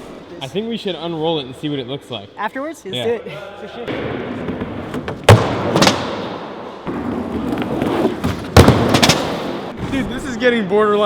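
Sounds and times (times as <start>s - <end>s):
skateboard impacts: 3.9s - 10.0s
skateboard wheels rolling: 6.9s - 10.0s.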